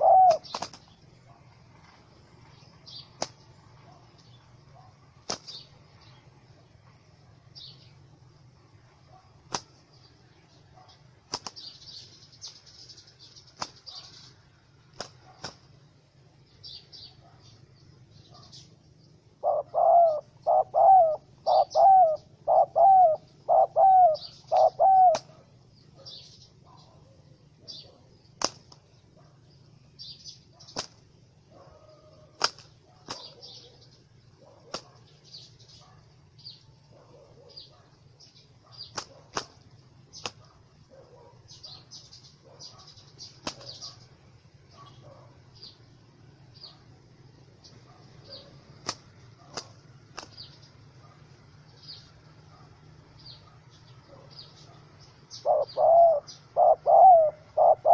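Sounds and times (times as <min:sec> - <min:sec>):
dove calling: 0:00.0 - 0:57.9
small birds chirping: 0:00.0 - 0:57.9
wings flapping and knocking: 0:00.5 - 0:00.9, 0:05.2 - 0:05.6, 0:09.4 - 0:09.8, 0:11.3 - 0:11.6, 0:13.5 - 0:13.9, 0:14.9 - 0:15.7, 0:28.4 - 0:28.9, 0:30.7 - 0:31.1, 0:32.4 - 0:33.3, 0:38.9 - 0:40.4, 0:43.4 - 0:43.8, 0:48.7 - 0:50.4.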